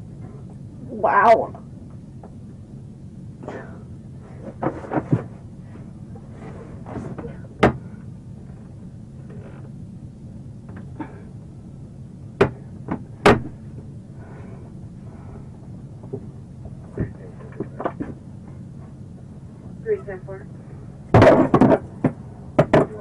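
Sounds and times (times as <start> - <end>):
low hum: 0.0 - 23.0
sharp knocks and bangs: 21.1 - 23.0.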